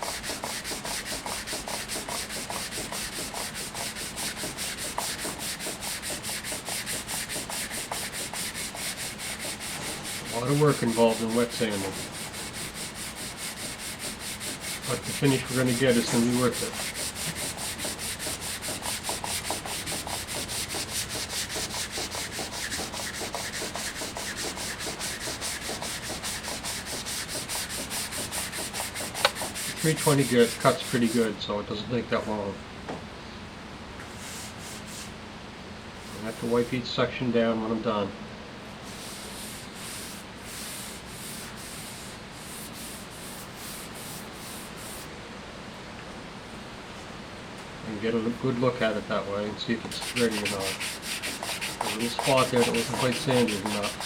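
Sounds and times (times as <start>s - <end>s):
wet sanding by hand: 0.0s - 31.4s, 36.0s - 36.8s, 38.8s - 45.1s, 49.9s - 54.0s.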